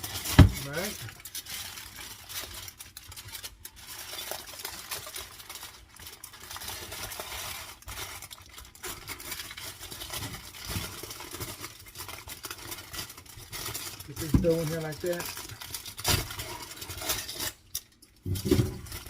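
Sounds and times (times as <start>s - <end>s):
hands rustling dough: 0.0s - 19.0s.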